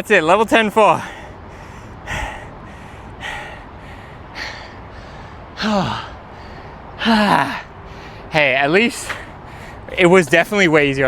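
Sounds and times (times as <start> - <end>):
man gasping for breath: 1.0 - 8.2
man groaning sigh: 5.6 - 6.2, 7.0 - 7.7.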